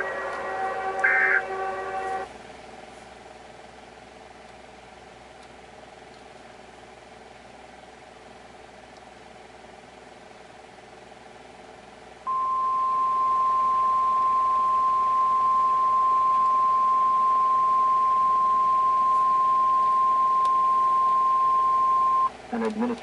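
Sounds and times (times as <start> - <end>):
steady alert beep: 12.3 - 22.3.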